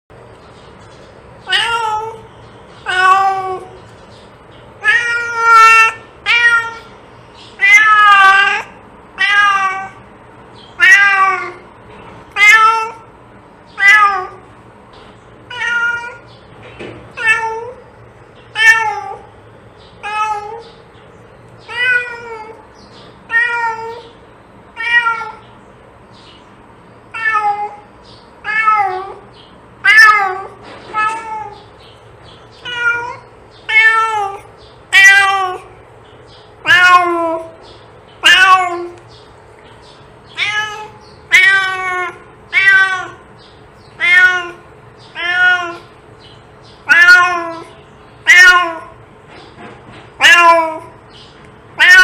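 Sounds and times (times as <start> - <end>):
cat meowing: 1.4 - 3.8, 4.8 - 6.9, 7.6 - 10.0, 10.7 - 11.7, 12.3 - 13.1, 13.7 - 14.5, 15.5 - 16.3, 17.1 - 17.8, 18.5 - 19.3, 20.0 - 20.6, 21.6 - 22.6, 23.3 - 25.5, 27.1 - 31.7, 32.6 - 35.8, 36.6 - 37.6, 38.2 - 39.0, 40.3 - 43.3, 43.9 - 45.9, 46.8 - 49.0, 50.2 - 51.0, 51.8 - 52.0.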